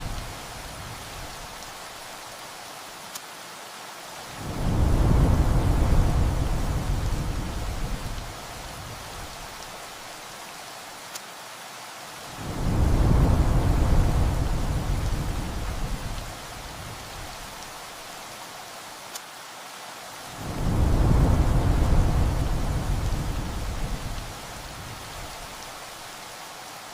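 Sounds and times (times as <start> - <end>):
steady rain hissing: 0.0 - 26.9
deep thunder rumble: 4.4 - 8.4, 12.4 - 17.2, 20.4 - 25.3.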